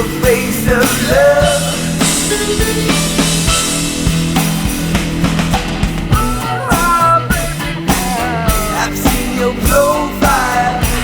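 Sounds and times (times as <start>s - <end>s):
wavering lead melody: 0.0s - 8.0s
drum kit steady beat: 0.0s - 11.0s
sustained bass and chords: 0.0s - 11.0s.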